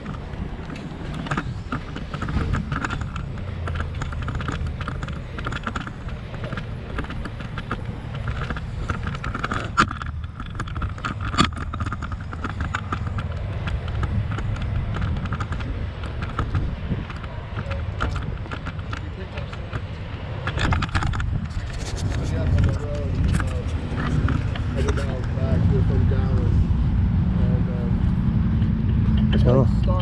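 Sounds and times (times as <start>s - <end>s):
small clicks: 0.0s - 25.4s
low rumble of vehicles: 0.0s - 30.0s.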